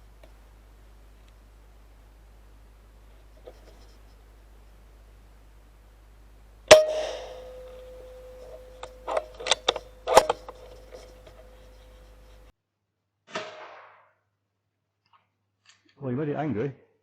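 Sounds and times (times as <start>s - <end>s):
air rifle shot: 6.7s - 10.6s, 13.3s - 14.1s
metallic clang ringing: 6.7s - 12.3s
sharp clicks: 7.4s - 11.9s.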